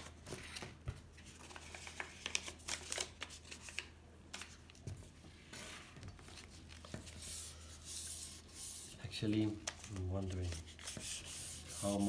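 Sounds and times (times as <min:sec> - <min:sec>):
sandpaper rubbing on metal: 0:11.0 - 0:12.0.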